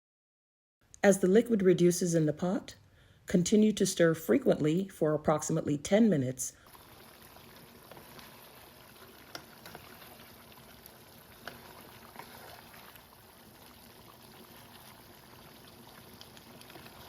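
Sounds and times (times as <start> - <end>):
stew bubbling in a pot: 6.6 - 17.0.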